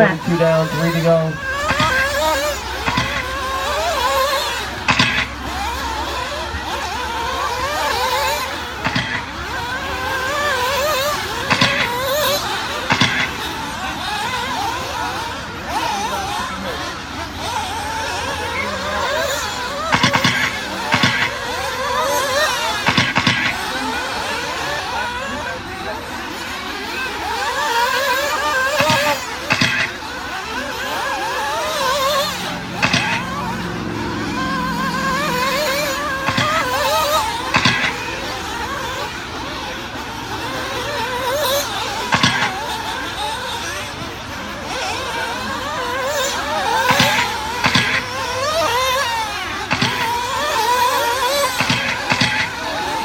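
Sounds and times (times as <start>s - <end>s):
sharp knocks: 0.0s - 2.2s, 2.8s - 3.3s, 4.9s - 5.3s, 8.8s - 9.3s, 11.5s - 12.0s, 12.9s - 13.4s, 19.9s - 21.4s, 22.9s - 23.6s, 28.8s - 30.0s, 32.6s - 33.3s, 34.9s - 36.9s, 37.5s - 38.0s, 42.1s - 42.6s, 46.9s - 48.1s, 49.7s - 50.1s, 51.6s - 52.5s
small engines racing high whine: 0.0s - 53.0s.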